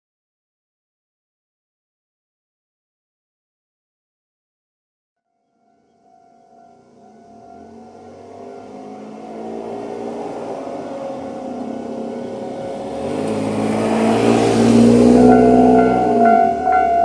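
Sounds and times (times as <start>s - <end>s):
level crossing warning bell: 5.4s - 17.0s
electric train motors humming: 6.9s - 17.0s
train wheels on rails: 7.5s - 17.0s.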